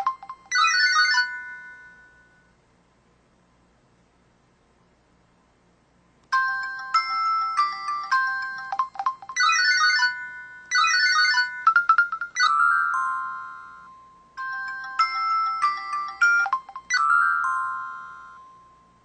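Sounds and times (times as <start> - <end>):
phone electronic melody: 0.0 - 2.4, 6.3 - 19.0.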